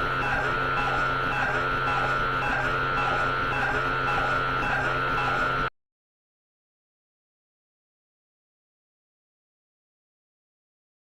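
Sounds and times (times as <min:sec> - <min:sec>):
fluorescent light buzzing: 0:00.0 - 0:05.7.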